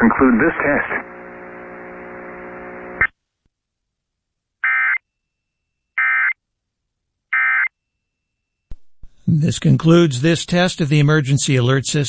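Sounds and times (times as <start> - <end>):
steady hum: 0.0 - 3.1.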